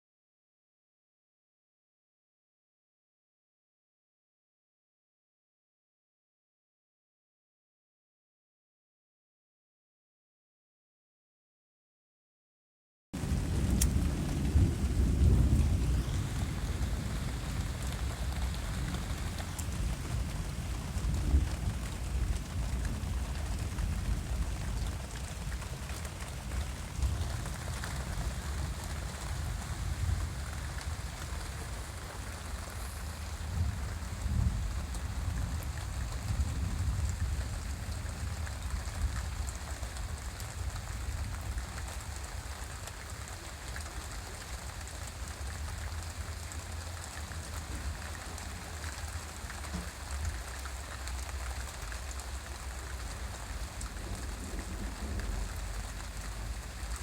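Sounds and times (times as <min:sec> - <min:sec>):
rain pattering: 0:13.2 - 0:57.0.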